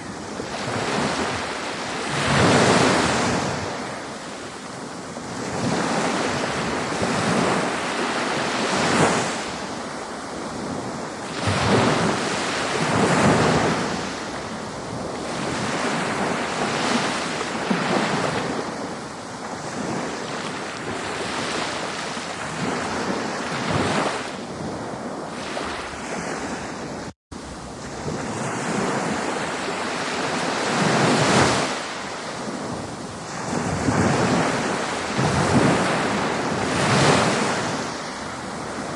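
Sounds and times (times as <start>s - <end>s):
waves breaking on shore: 0.0s - 38.9s.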